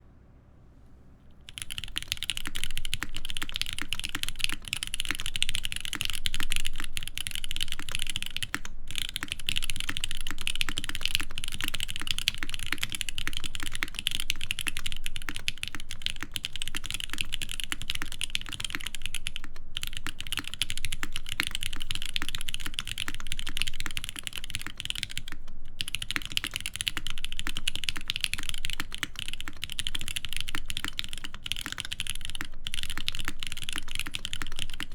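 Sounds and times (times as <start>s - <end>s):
fast typing on mechanical keyboard: 1.4s - 34.9s.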